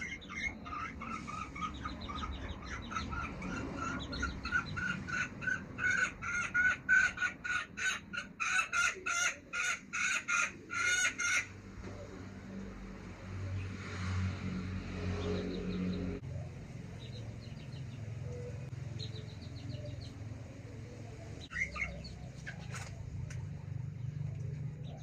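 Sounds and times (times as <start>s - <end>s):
hen clucking: 0.0s - 12.3s, 21.0s - 23.4s.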